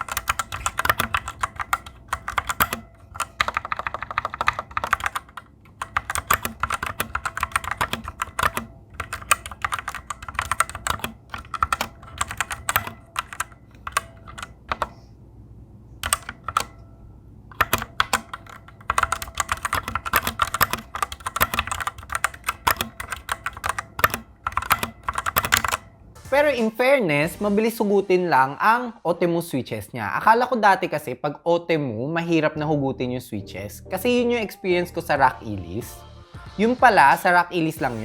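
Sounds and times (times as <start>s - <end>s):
mechanical keyboard key clacks: 0.0s - 15.0s, 16.0s - 16.8s, 17.5s - 25.9s.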